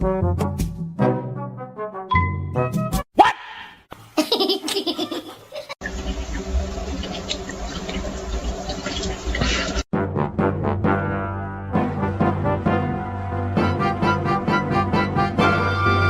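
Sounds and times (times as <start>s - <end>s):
laughter: 4.2s - 5.8s.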